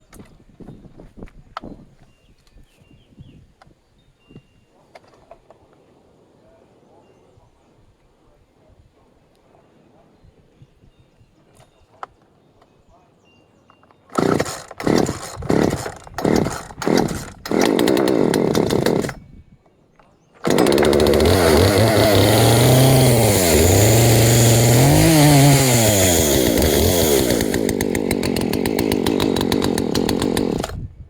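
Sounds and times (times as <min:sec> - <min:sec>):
chainsaw sputtering and revving: 0:14.1 - 0:19.2, 0:20.4 - 0:30.9.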